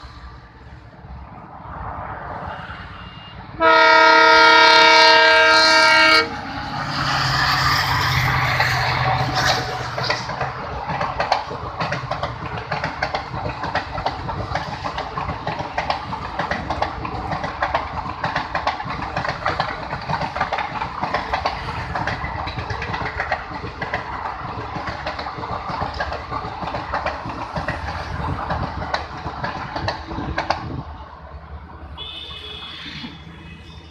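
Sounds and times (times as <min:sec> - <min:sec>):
train wheels clattering on rails: 0:03.7 - 0:31.0.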